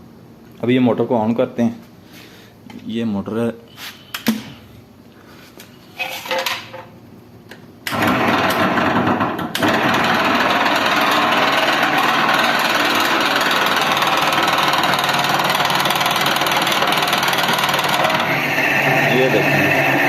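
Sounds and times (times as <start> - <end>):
fan motor running harshly: 7.9 - 20.0.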